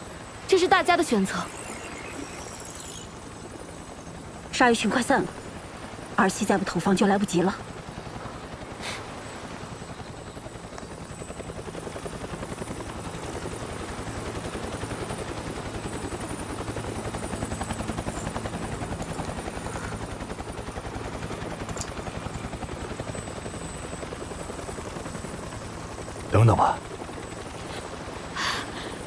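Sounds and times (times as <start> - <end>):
helicopter rotor chopping: 0.1 - 29.0.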